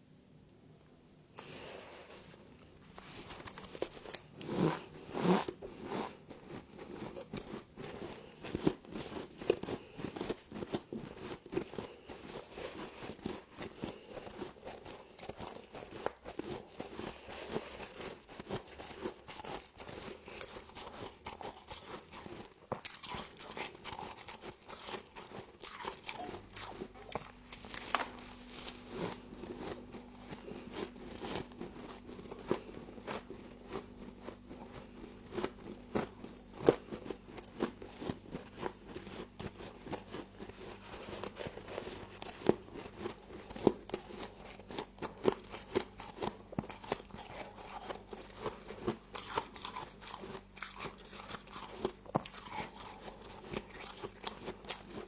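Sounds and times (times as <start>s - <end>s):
frost being crunched by chewing: 2.8s - 55.0s.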